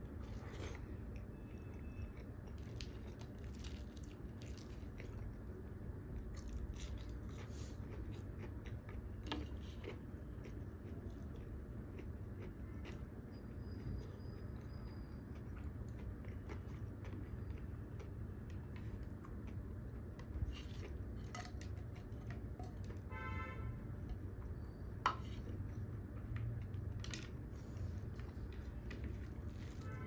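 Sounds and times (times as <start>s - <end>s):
steady low hum: 0.0s - 30.0s
person biting and chewing food: 0.1s - 5.4s.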